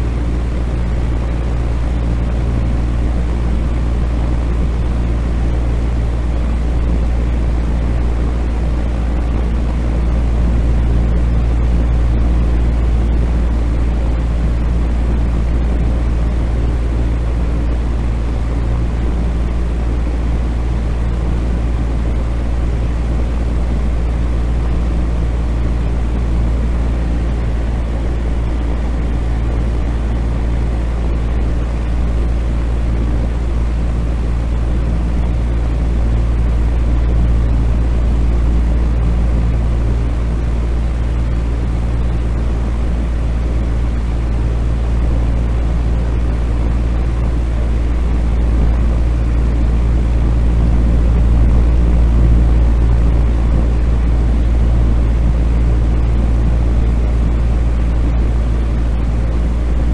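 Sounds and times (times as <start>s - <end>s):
electric fan running: 0.0s - 59.9s.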